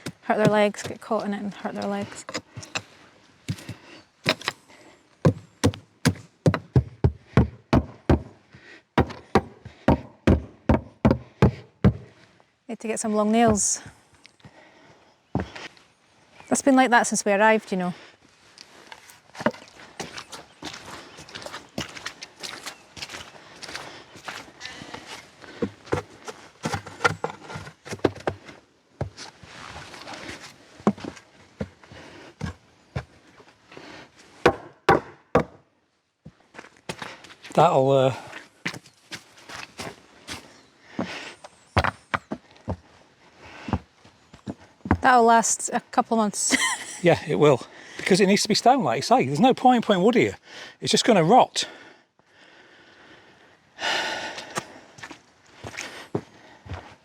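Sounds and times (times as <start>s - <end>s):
hammer knocking on wooden planks: 5.3s - 8.4s, 9.0s - 12.1s, 34.5s - 35.6s
hammer driving nails into wood: 34.5s - 35.6s.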